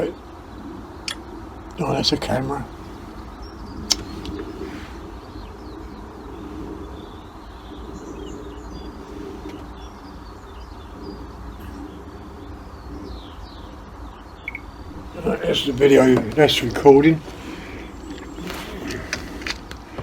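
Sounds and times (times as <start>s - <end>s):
pigeons cooing: 0.0s - 20.0s
small birds chirping: 0.0s - 20.0s
sharp click: 3.9s - 4.4s.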